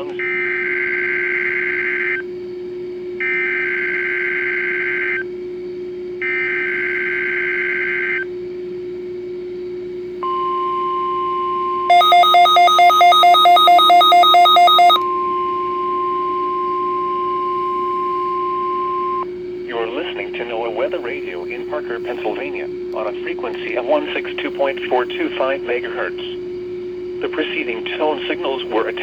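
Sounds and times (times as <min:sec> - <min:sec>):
two-tone data warble: 0:10.2 - 0:20.6
steady warning alarm tone: 0:10.2 - 0:29.0
loud rapid beeping: 0:11.9 - 0:15.0.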